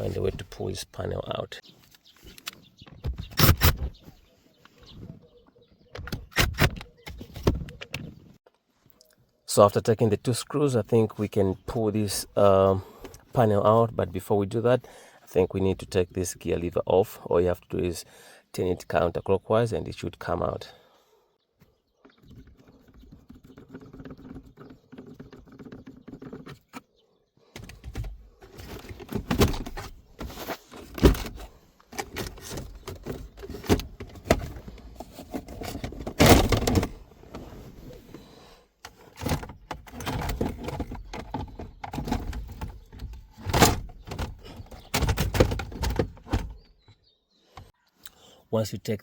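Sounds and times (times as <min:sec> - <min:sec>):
plastic trim thunks: 0:27.6 - 0:34.7, 0:35.6 - 0:37.0
plastic trim clicking and rattling: 0:38.8 - 0:46.6.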